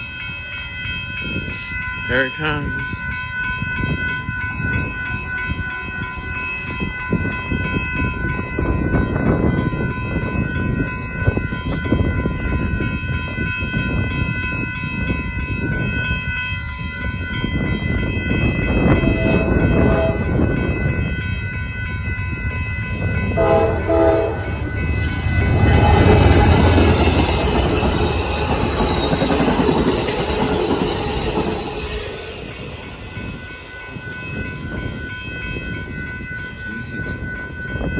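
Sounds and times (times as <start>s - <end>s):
crossing signal bells ringing: 0.0s - 37.9s
train wheels clattering on rails: 3.8s - 35.0s
train horn blasts: 18.8s - 20.9s, 23.2s - 27.6s.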